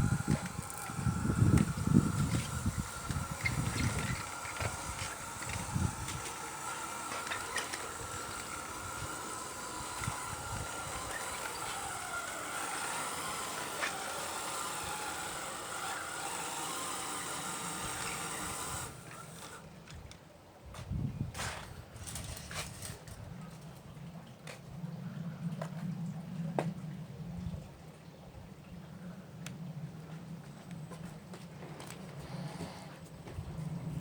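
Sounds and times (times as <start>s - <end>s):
electric motor whine: 0.0s - 19.7s.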